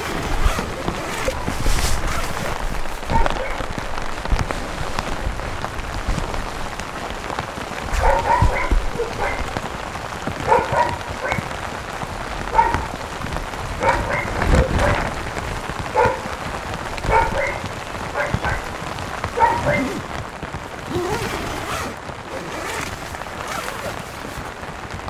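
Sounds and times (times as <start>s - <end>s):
steady rain falling: 0.0s - 25.0s
dog barking: 0.1s - 4.5s, 7.8s - 11.8s, 12.4s - 20.2s, 20.9s - 24.1s.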